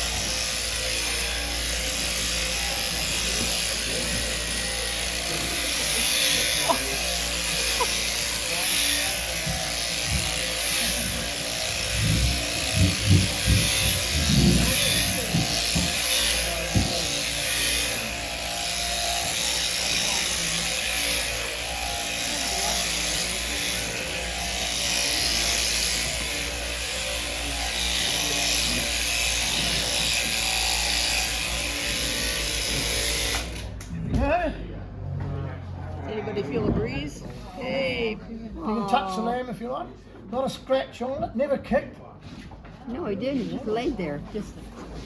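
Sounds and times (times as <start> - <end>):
electric shearing handpiece buzzing: 0.0 - 33.9.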